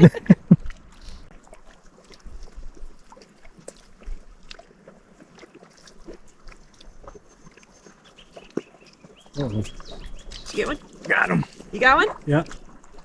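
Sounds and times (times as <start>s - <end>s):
water slapping boat hull: 0.0s - 13.0s
wind buffeting microphone: 8.1s - 13.0s.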